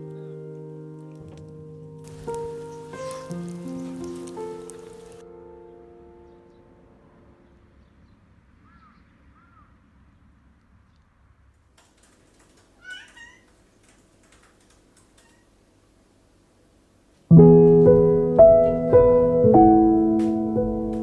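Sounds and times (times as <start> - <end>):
music: 0.0 - 7.6, 17.3 - 21.0
faint clicks: 1.0 - 5.2, 11.8 - 15.6.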